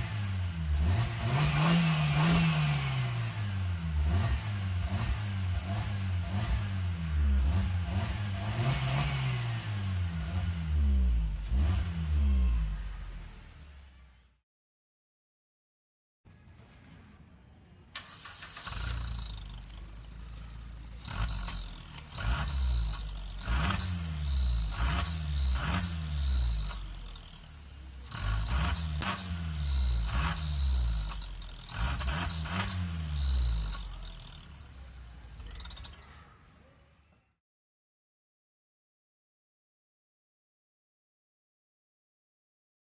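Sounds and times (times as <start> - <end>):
engine idling: 18.0 - 36.1
throttle blips: 18.5 - 36.0
turbo whistle: 18.5 - 36.0.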